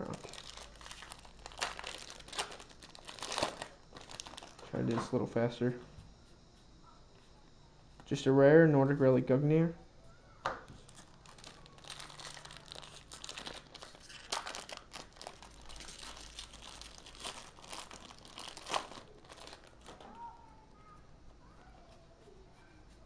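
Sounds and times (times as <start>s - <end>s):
foil wrapper crinkling: 0.0s - 4.8s, 10.8s - 20.2s.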